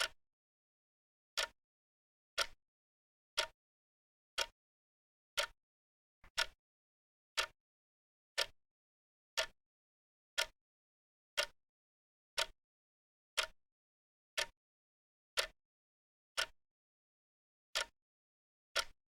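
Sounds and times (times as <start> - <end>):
clock ticking: 2.4 - 2.6, 5.4 - 5.6, 6.3 - 6.6, 12.4 - 12.6, 14.4 - 14.6, 18.8 - 19.0.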